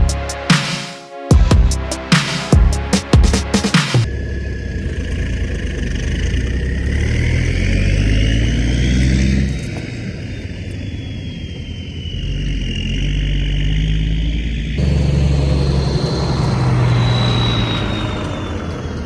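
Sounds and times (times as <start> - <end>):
high whine: 0.0 - 5.3
bulldozer diesel engine: 2.7 - 19.0.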